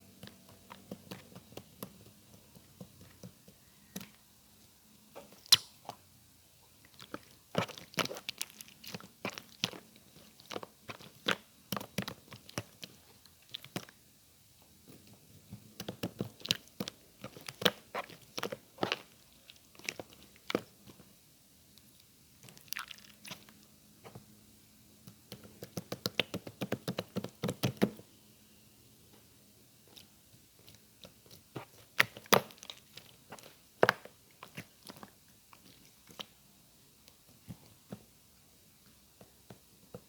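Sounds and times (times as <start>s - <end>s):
crisp crunching: 7.0s - 11.2s.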